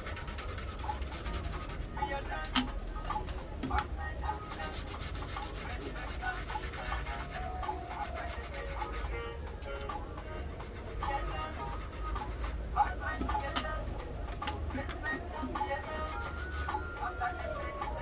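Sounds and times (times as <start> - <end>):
brush scrubbing circuit board: 0.0 - 2.0, 4.2 - 9.2, 10.2 - 12.7, 15.5 - 17.1
music playing: 0.0 - 18.0.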